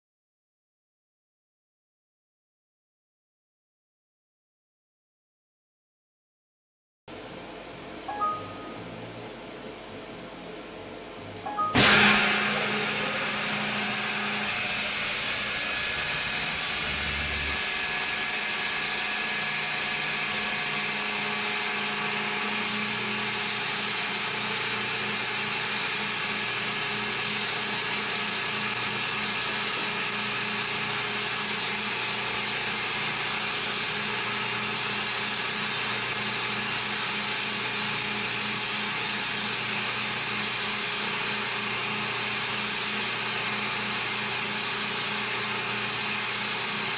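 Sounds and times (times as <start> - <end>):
milling machine hum: 11.2 - 46.9.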